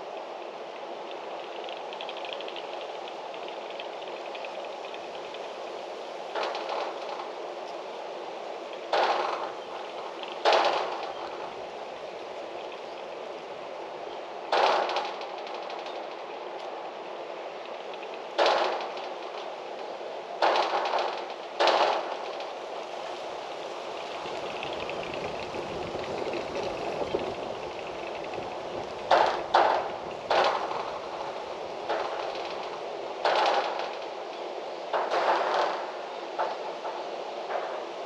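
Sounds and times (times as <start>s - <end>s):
sharp wind gusts: 0.0s - 38.0s
wind blowing: 0.0s - 38.0s.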